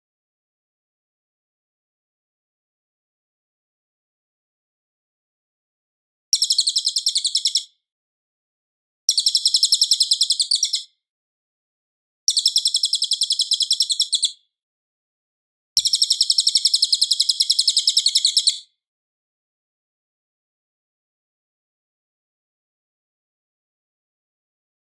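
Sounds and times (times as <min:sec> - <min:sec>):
high-pitched bird chirps: 0:06.4 - 0:07.8, 0:09.1 - 0:11.0, 0:12.3 - 0:14.4, 0:15.8 - 0:18.8.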